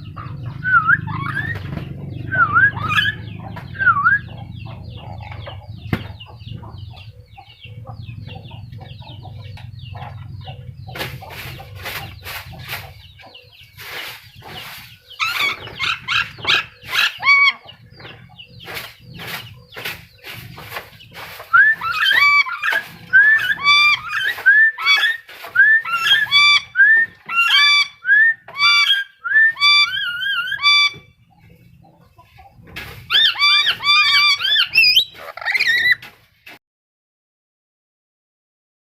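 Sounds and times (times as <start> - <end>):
parrot squawking and calling: 0.0 - 1.7, 2.3 - 4.3, 15.2 - 17.8, 21.5 - 31.1, 33.1 - 36.0.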